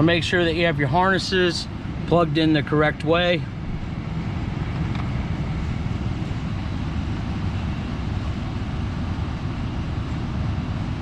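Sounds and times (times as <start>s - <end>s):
vehicle running low rumble: 0.0s - 11.0s.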